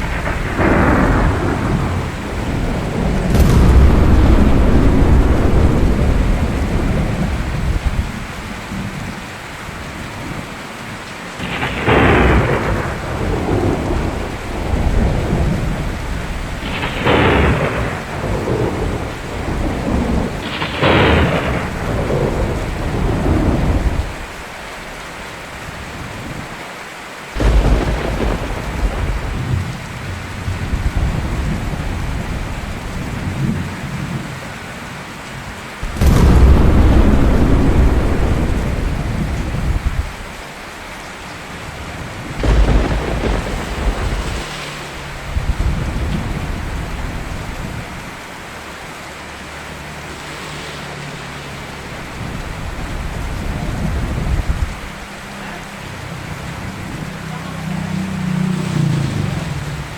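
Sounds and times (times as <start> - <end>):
sharp thunderclaps: 0.0 - 8.4, 11.4 - 24.3, 27.4 - 33.4, 35.8 - 40.7, 42.3 - 47.7
rolling thunder rumble: 0.0 - 9.1, 11.4 - 24.6, 27.4 - 34.2, 35.8 - 48.2
steady rain: 0.0 - 59.9.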